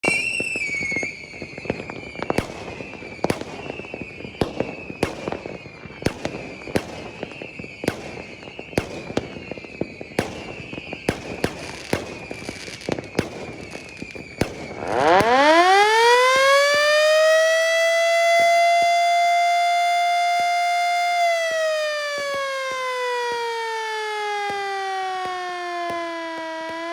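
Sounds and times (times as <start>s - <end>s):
fireworks banging: 0.0s - 20.0s, 21.1s - 26.9s
faint high siren tone: 14.7s - 26.9s
electric motor siren wailing: 14.8s - 26.9s.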